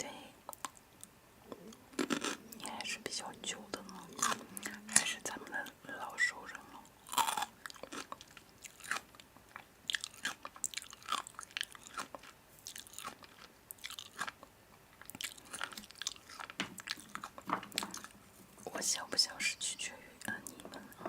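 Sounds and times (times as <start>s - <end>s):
person chewing crunchy food: 0.5s - 5.1s, 6.5s - 18.2s.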